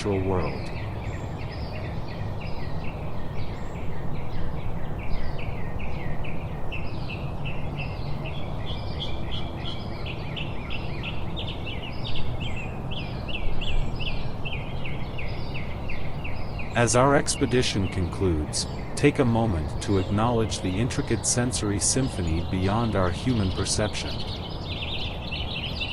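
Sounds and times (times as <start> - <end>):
steady low rumble: 16.8 - 24.4.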